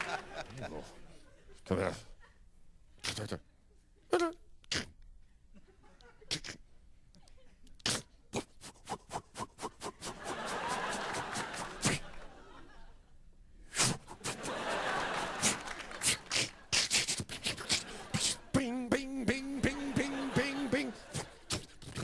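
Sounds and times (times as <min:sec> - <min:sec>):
studio audience laughing: 0:00.0 - 0:02.5, 0:09.9 - 0:13.2, 0:14.1 - 0:16.7, 0:17.5 - 0:18.5, 0:19.5 - 0:22.0.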